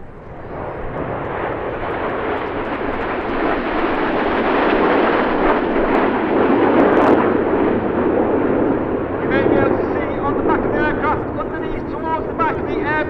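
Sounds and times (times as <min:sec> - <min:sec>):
jets flying past: 0:00.0 - 0:13.0.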